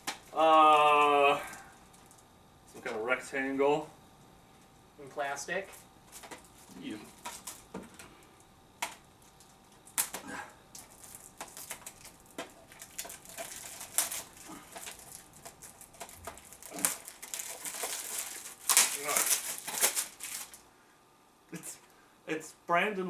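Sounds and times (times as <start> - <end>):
plastic wrapping crinkling and tearing: 6.1 - 8.0, 8.8 - 20.6.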